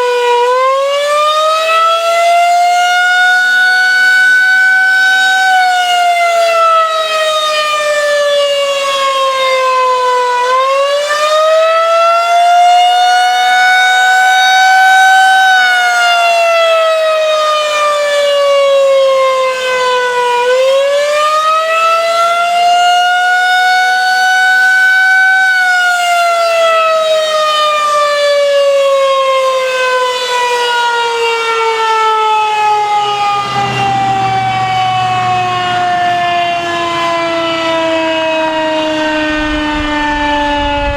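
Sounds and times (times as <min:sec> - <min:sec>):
rising and falling warning siren: 0:00.0 - 0:40.9
low hum: 0:39.2 - 0:40.9.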